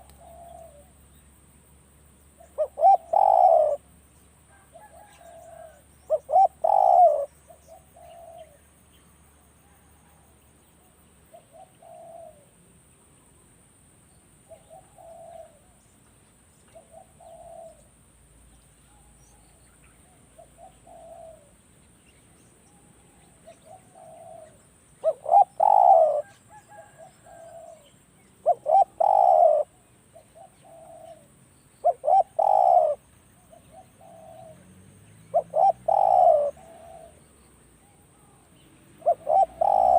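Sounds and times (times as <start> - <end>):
doves cooing: 0.0 - 1.0, 2.4 - 3.9, 4.6 - 8.6, 11.3 - 12.5, 14.5 - 15.8, 16.8 - 17.9, 20.3 - 21.6, 22.9 - 39.9.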